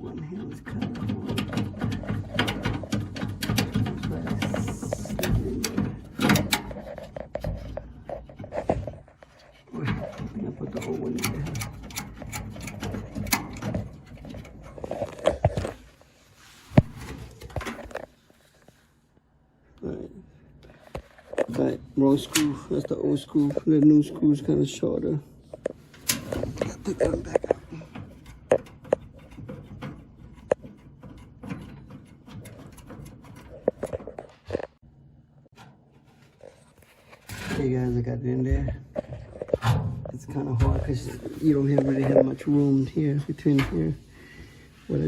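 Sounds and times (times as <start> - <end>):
screwdriver clicking on metal cabinet: 0.5 - 8.5, 9.9 - 15.2, 26.0 - 34.2.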